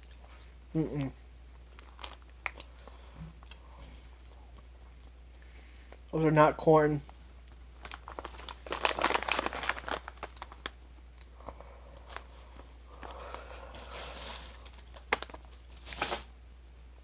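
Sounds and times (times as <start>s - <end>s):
plastic chip bag crinkling: 1.7s - 3.5s, 7.5s - 11.3s, 12.0s - 12.4s, 13.0s - 16.3s.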